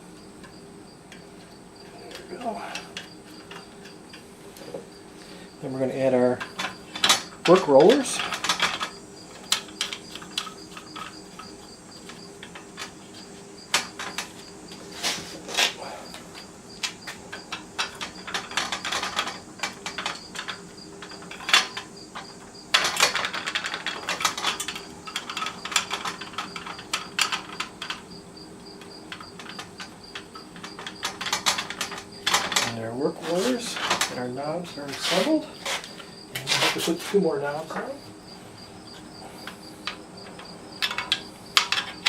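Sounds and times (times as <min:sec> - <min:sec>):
metal and plastic parts clicking: 0:06.4 - 0:13.0, 0:15.6 - 0:28.0, 0:28.8 - 0:32.8, 0:39.4 - 0:42.0.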